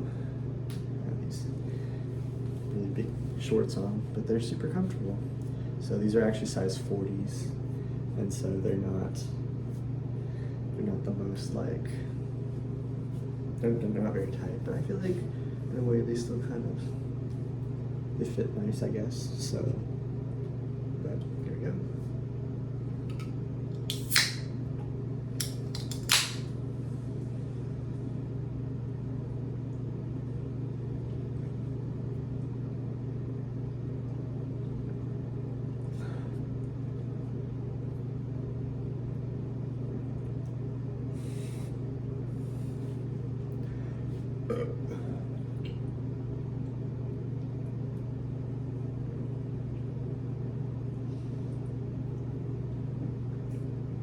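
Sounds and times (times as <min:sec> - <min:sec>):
steady low hum: 0:00.0 - 0:54.0
loud sharp clicks: 0:25.4 - 0:26.5.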